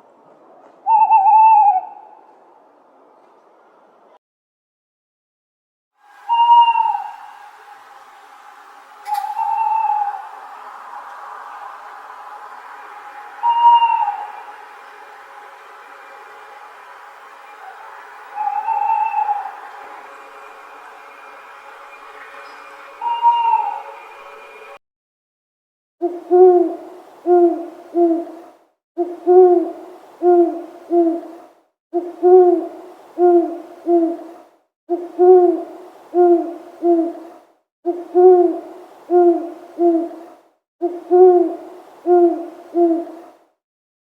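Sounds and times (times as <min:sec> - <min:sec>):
owl hooting: 0:00.9 - 0:02.1, 0:06.1 - 0:07.7, 0:09.0 - 0:10.7, 0:13.2 - 0:15.0, 0:17.6 - 0:20.1, 0:23.0 - 0:24.0, 0:26.0 - 0:43.4.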